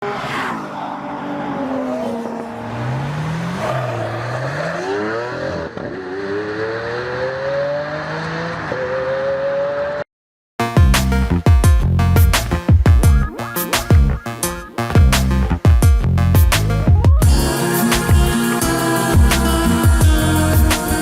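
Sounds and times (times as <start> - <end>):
car engine revving and accelerating: 0.0 - 10.0.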